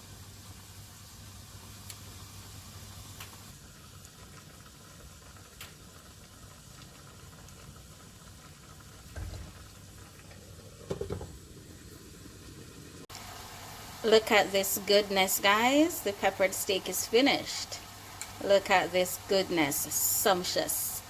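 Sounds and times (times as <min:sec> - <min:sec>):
pot bubbling: 0:00.0 - 0:21.0.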